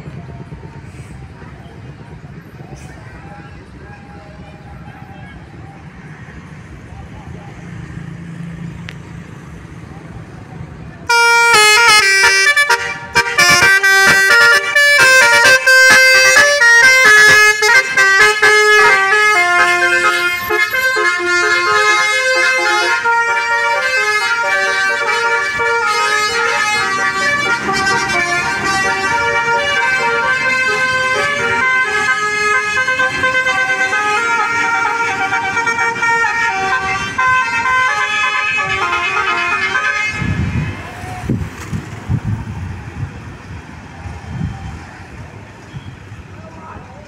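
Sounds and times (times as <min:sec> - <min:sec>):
musical bus horn melody: 0:11.1 - 0:40.4.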